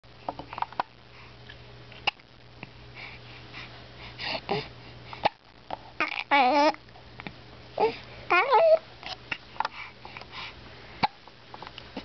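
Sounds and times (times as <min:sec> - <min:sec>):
baby soft vocal sound: 0:07.8 - 0:09.2.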